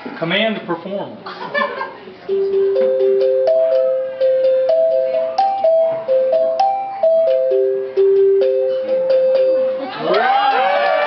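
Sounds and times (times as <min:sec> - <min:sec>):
dinner chime tune: 0:02.3 - 0:10.0.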